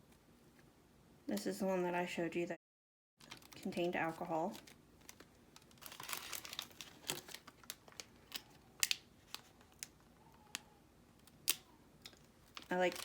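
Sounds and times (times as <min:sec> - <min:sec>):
plastic packaging crinkling: 0:03.2 - 0:10.6, 0:11.2 - 0:13.0.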